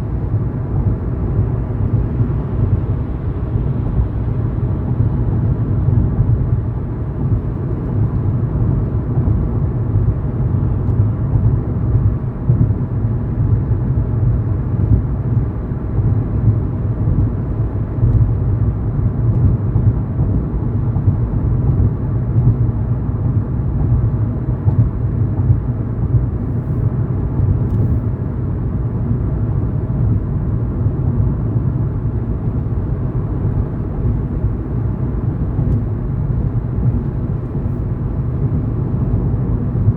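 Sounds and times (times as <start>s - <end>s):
car driving rumble: 24.0s - 39.9s.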